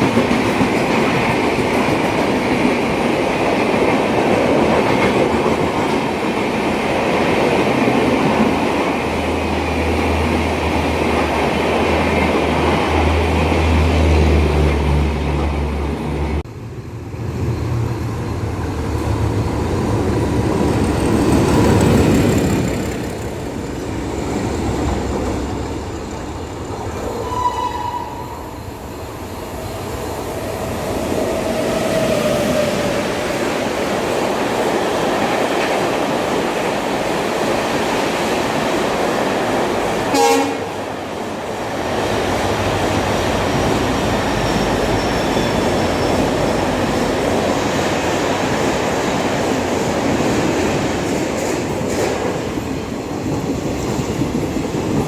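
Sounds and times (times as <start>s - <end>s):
train wheels rumbling on track: 0.0s - 55.0s
train horn toots: 27.2s - 28.5s, 40.1s - 40.8s.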